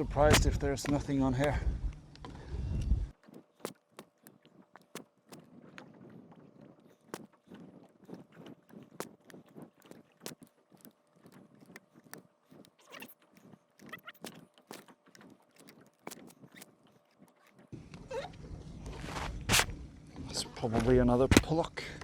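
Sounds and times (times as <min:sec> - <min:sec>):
fishing line clicks and knocks: 0:03.1 - 0:06.0, 0:07.0 - 0:17.7.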